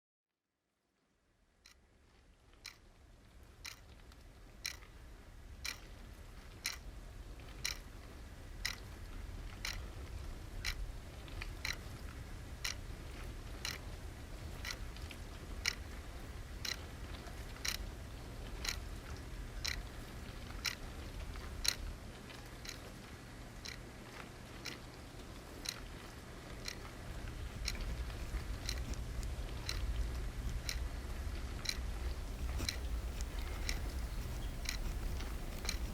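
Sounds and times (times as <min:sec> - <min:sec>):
sharp regular ticks: 0:26.6 - 0:30.8, 0:31.6 - 0:35.9
low steady rumble: 0:26.6 - 0:35.9.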